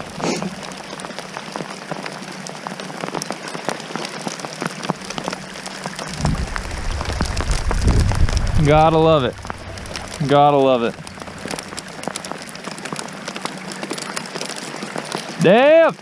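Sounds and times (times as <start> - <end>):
rain and hail falling: 0.0 - 16.0
low rumble: 4.9 - 13.9.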